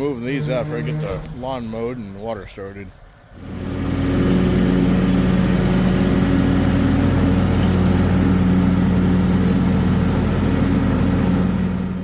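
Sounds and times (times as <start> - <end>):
riding lawn mower engine: 3.3 - 12.0.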